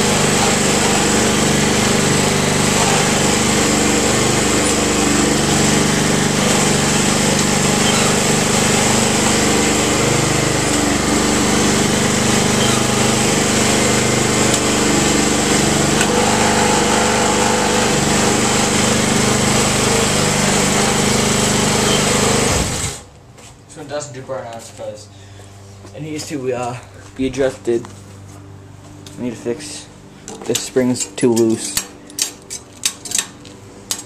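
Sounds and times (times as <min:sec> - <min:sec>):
lawn mower engine running: 0:00.0 - 0:23.1.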